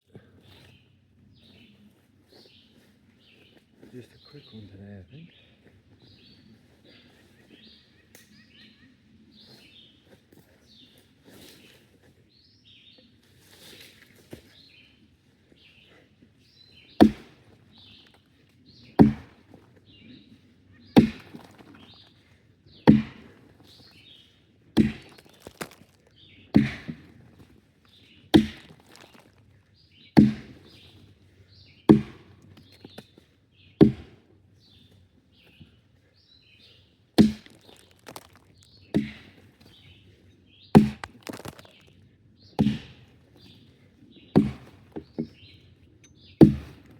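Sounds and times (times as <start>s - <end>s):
axe chopping wood: 17.0s - 18.0s, 19.0s - 19.6s, 21.0s - 22.1s, 22.8s - 23.4s, 24.8s - 27.5s, 28.3s - 29.4s, 30.2s - 30.8s, 31.9s - 33.0s, 33.8s - 34.2s, 37.2s - 39.7s, 40.7s - 41.9s, 42.6s - 43.1s, 44.4s - 45.4s, 46.4s - 46.9s.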